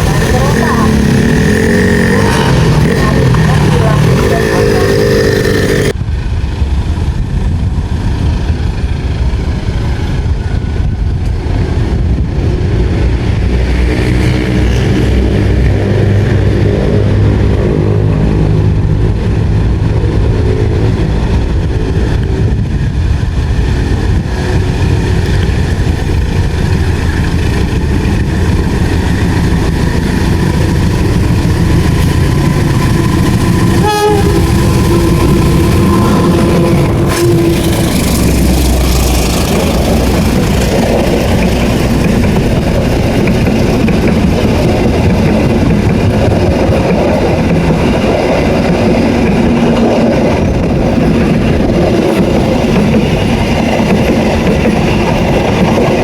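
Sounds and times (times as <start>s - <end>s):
passing vehicle engines: 0.0s - 6.0s.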